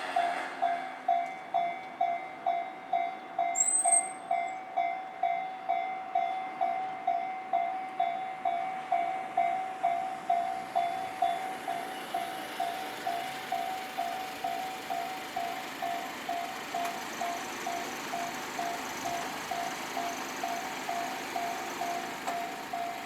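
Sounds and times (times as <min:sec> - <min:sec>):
level crossing warning bell: 0:00.2 - 0:23.0
brief high squeal: 0:03.6 - 0:04.2.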